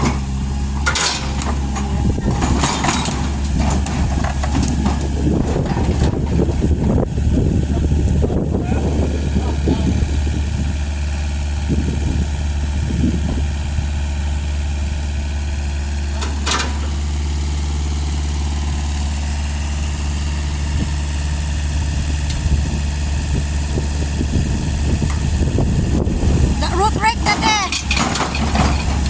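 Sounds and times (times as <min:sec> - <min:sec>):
engine idling: 0:00.0 - 0:29.0
metallic clank: 0:00.8 - 0:05.0, 0:16.2 - 0:17.0, 0:27.6 - 0:29.0.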